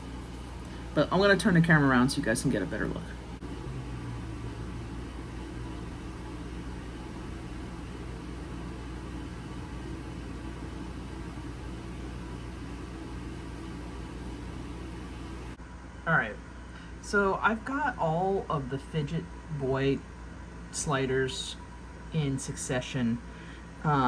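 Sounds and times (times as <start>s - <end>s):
steady low hum with hiss: 0.0s - 24.0s.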